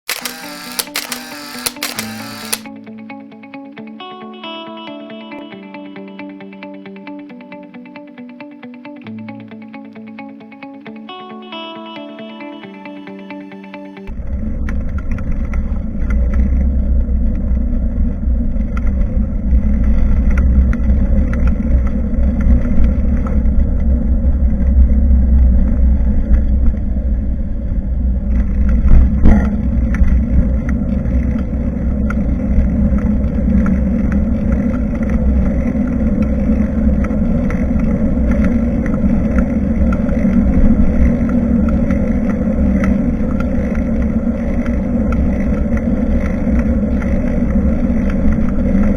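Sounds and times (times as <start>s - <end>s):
wind and road rumble: 14.1s - 48.9s
small rattles and clicks: 28.4s - 48.9s.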